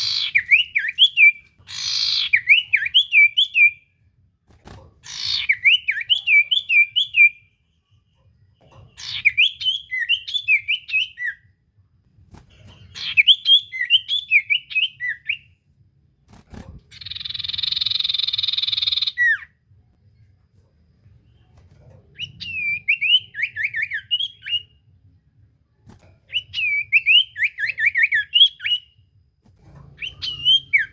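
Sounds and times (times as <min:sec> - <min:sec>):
bird whistling song: 0:00.0 - 0:03.9, 0:05.1 - 0:07.6, 0:09.0 - 0:11.6, 0:13.0 - 0:15.6, 0:16.9 - 0:19.6, 0:22.2 - 0:24.8, 0:26.2 - 0:29.1, 0:30.0 - 0:30.9.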